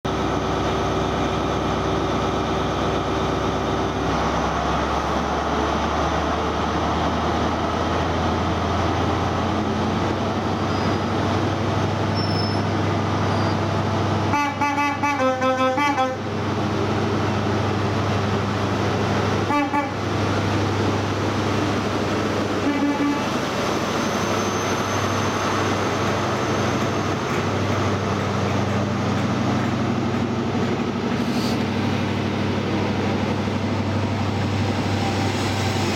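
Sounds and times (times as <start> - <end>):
train diesel engine running: 0.1 - 35.9
loud two-tone train horn: 14.3 - 16.3, 19.5 - 20.0, 22.6 - 23.4.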